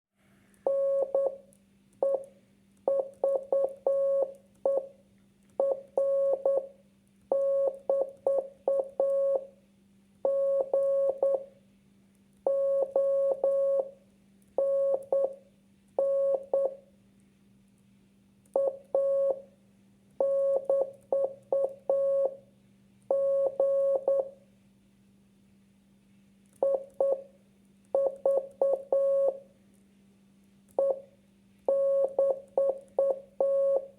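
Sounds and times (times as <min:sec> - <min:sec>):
faint low hum: 0:00.2 - 0:33.9
morse code beeps: 0:00.7 - 0:01.4, 0:02.9 - 0:04.9, 0:05.6 - 0:06.7, 0:07.3 - 0:09.5, 0:10.3 - 0:11.4, 0:12.5 - 0:13.9, 0:14.6 - 0:15.4, 0:16.0 - 0:16.8, 0:18.6 - 0:19.4, 0:20.2 - 0:22.4, 0:23.1 - 0:24.3, 0:26.6 - 0:27.2, 0:28.0 - 0:29.4, 0:30.8 - 0:31.0, 0:31.7 - 0:33.9.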